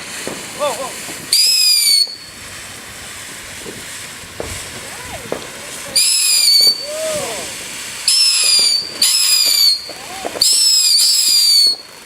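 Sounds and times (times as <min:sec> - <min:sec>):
crackling hiss: 0:00.0 - 0:12.0
shrill firework whistle: 0:01.2 - 0:02.5, 0:04.4 - 0:12.0.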